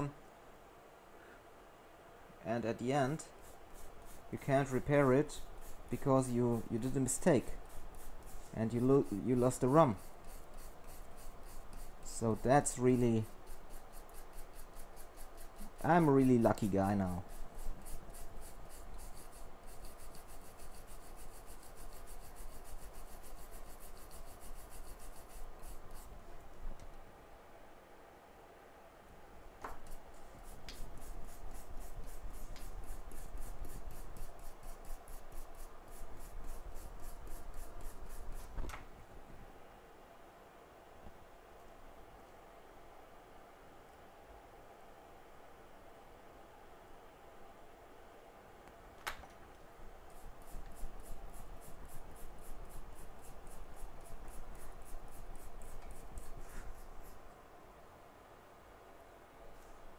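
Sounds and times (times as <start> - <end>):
rubbing strokes on hard surface: 3.2 - 26.1, 29.8 - 38.6, 50.1 - 57.2.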